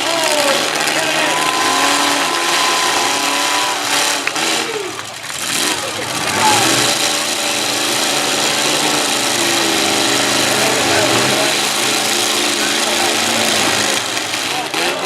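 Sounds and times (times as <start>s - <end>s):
truck engines revving hard: 0.0s - 15.0s.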